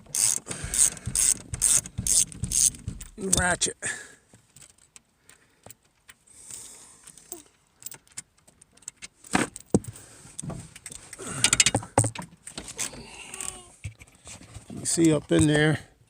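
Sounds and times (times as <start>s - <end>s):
ratchet wrench clicking: 0.1s - 3.4s.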